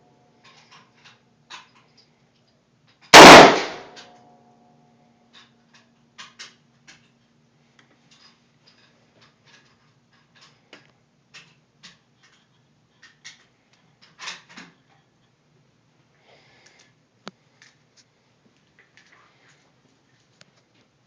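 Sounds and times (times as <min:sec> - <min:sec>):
faint clicks and knocks: 0:05.3 - 0:15.4.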